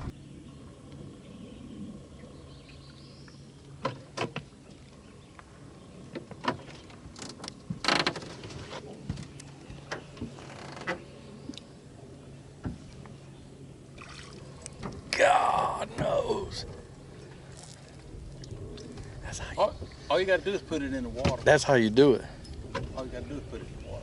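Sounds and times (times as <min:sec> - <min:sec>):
low steady hum: 0:00.0 - 0:07.8, 0:08.4 - 0:24.0.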